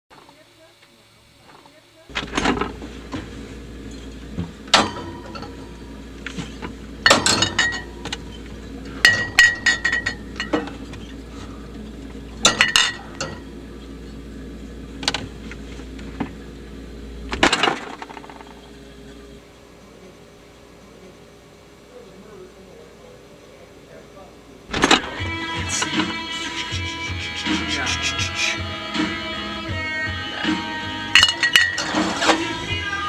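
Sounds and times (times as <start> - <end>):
steady low hum: 0.1 - 33.0
glass clinking and knocking: 7.1 - 8.0, 9.0 - 10.8, 12.5 - 13.4, 31.2 - 31.9.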